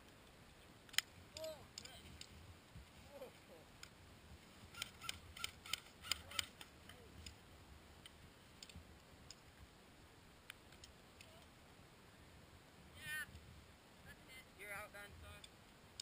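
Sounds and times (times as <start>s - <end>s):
sharp clicks: 0.9s - 2.4s, 4.7s - 7.4s, 10.5s - 11.5s.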